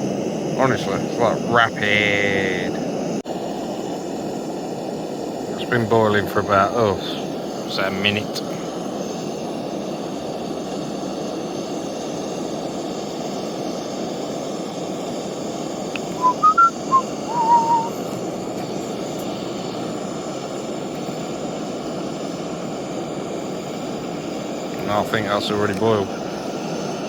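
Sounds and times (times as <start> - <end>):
gas stove burner rushing: 0.0 - 27.0
kettle water boiling: 0.0 - 27.0
whistle-like notes: 16.0 - 18.0.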